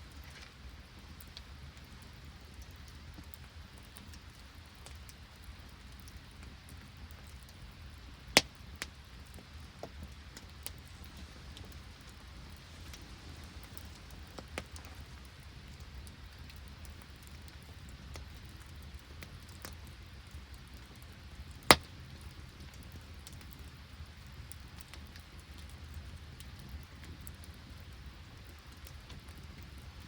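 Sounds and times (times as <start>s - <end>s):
campfire crackling and popping: 0.0s - 30.0s
rain falling: 9.3s - 19.6s.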